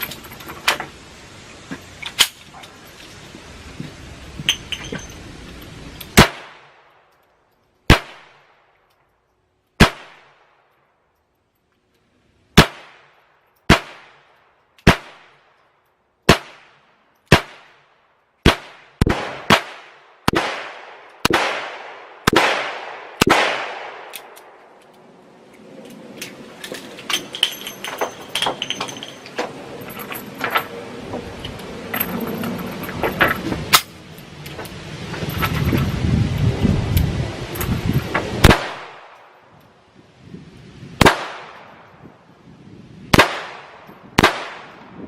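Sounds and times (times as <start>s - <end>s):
gunshots with echo: 18.5s - 24.1s
clicks and knocks: 26.2s - 33.9s.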